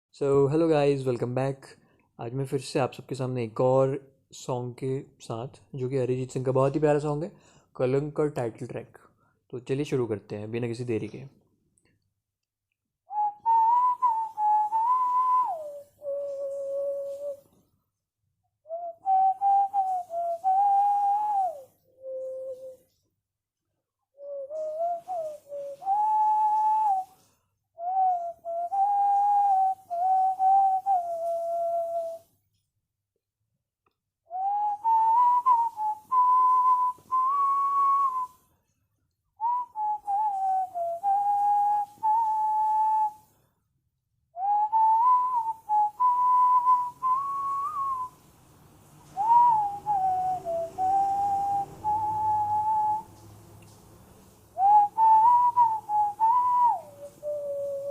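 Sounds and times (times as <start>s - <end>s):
person whistling a melody: 13.1s - 17.6s, 18.6s - 23.1s, 24.2s - 32.4s, 34.3s - 38.5s, 39.4s - 43.5s, 44.4s - 48.2s, 49.1s - 53.2s, 54.6s - 57.9s.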